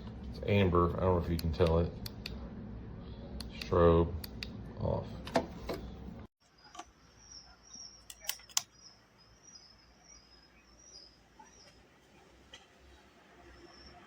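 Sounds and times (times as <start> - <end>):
faint high wavering chirping: 5.8 - 12.3.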